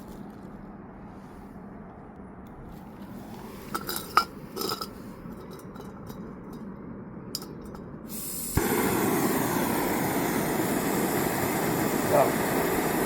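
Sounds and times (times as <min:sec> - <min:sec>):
gas burner roaring: 0:02.4 - 0:13.0
metallic clinks of stove: 0:03.8 - 0:06.6, 0:07.3 - 0:07.8
gas hissing: 0:08.1 - 0:13.0
burner lighting pop: 0:08.4 - 0:11.9.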